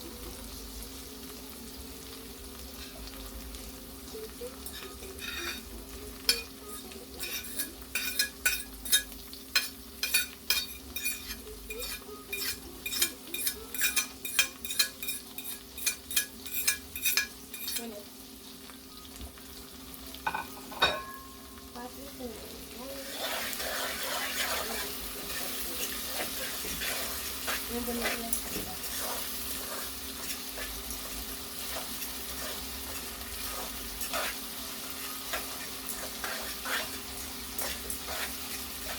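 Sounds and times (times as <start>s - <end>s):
fish sizzling in hot oil: 0.0s - 38.9s
spoon scraping against pot: 4.6s - 17.9s, 23.0s - 38.9s.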